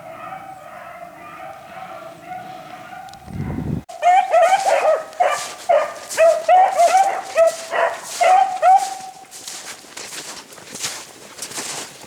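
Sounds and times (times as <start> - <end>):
dogs baying and yelping: 0.0 - 9.6.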